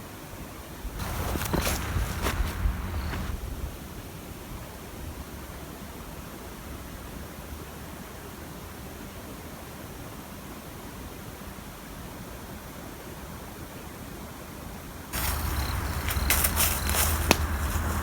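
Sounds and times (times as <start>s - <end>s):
rustling with sharp clicks: 1.0s - 3.4s, 15.2s - 18.0s
steady background hiss: 1.0s - 3.7s, 15.2s - 18.0s.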